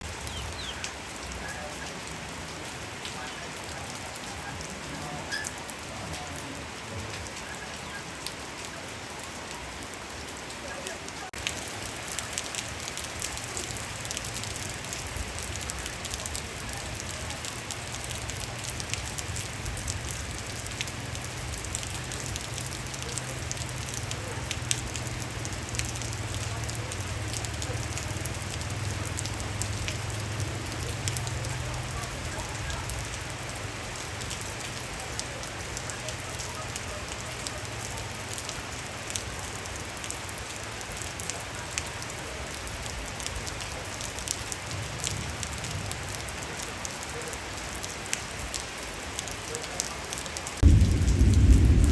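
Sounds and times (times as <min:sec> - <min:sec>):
rain hiss: 0:00.0 - 0:51.9
raindrops ticking on a surface: 0:00.0 - 0:51.9
low steady rumble: 0:50.6 - 0:51.9.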